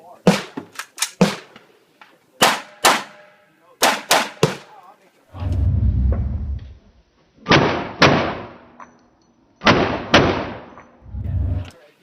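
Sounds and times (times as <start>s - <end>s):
slowed rifle shots: 9.6s - 11.7s.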